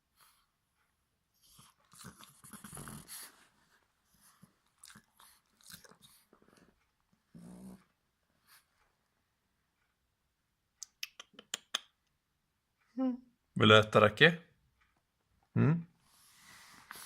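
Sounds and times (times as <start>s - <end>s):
puppy snuffling: 1.4s - 8.9s
puppy low vocal sound: 7.3s - 8.0s.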